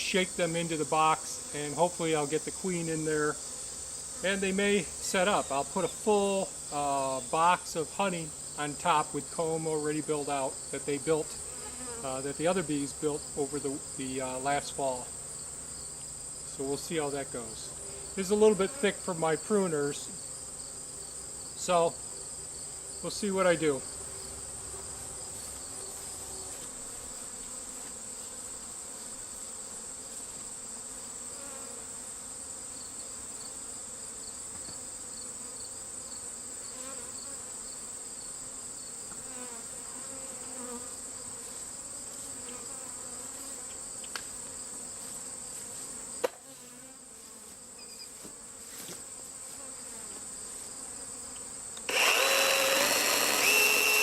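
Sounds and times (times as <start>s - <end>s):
crickets chirring: 0.0s - 26.5s
bees buzzing: 0.1s - 8.6s, 39.3s - 54.0s
power tool motor whining: 51.8s - 54.0s.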